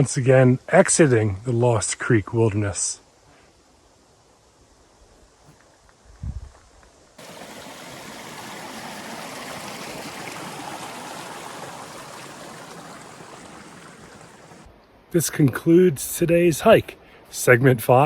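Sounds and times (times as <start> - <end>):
stream water rushing: 7.2 - 14.7.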